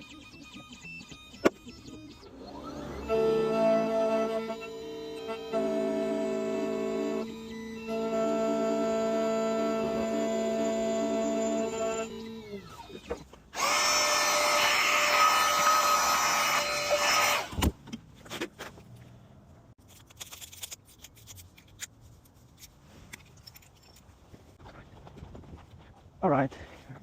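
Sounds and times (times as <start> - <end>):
key-cutting machine grinding: 2.2 - 13.0
small clicks and handling: 19.8 - 24.2.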